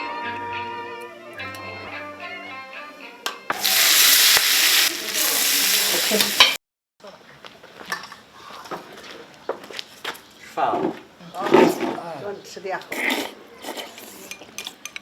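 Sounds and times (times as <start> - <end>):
hot oil sizzling: 3.5 - 6.6.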